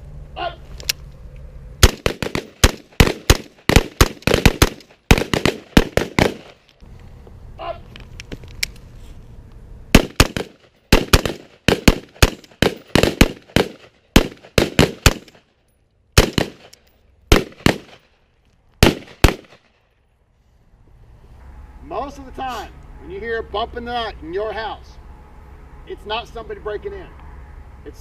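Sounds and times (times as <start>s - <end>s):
rifle shots: 1.8s - 6.6s, 9.9s - 15.5s, 16.2s - 18.2s, 18.8s - 19.8s.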